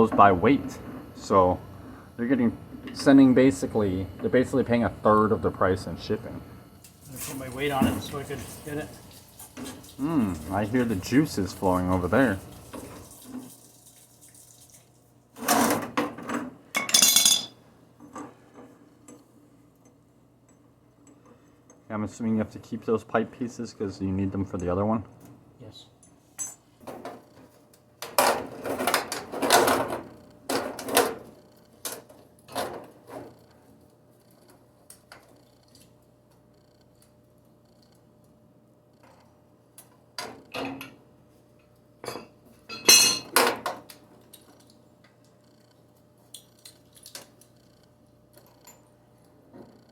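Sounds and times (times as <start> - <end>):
faint steady hum: 0.0 - 15.3, 16.6 - 49.9
metal tools clattering: 16.8 - 17.6, 42.0 - 43.5.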